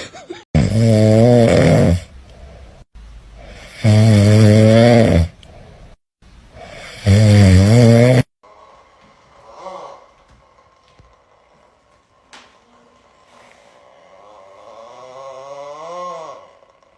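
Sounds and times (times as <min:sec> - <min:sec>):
loud droning snores: 0:00.6 - 0:02.1, 0:03.4 - 0:05.4, 0:06.6 - 0:08.3, 0:13.8 - 0:16.9.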